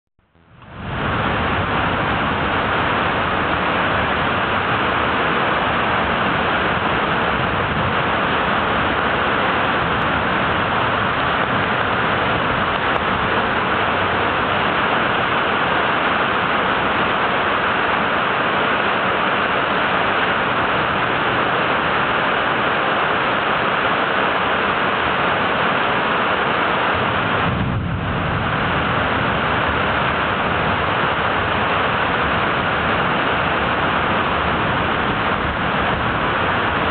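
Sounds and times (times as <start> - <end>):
heavy rain downpour: 0.2 - 36.9
deep low rumble: 27.0 - 36.9.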